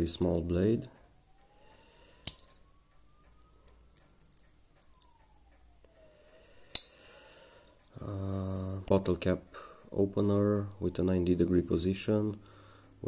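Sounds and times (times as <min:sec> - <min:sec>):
faint rising and falling tone: 0:00.0 - 0:09.3.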